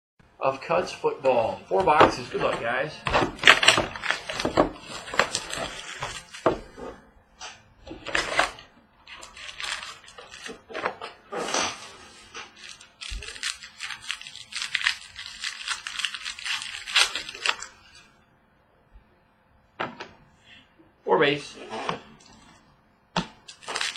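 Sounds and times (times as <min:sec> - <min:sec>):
plastic wrapping tearing and crinkling: 0:01.8 - 0:06.7, 0:07.9 - 0:18.1, 0:23.4 - 0:23.9.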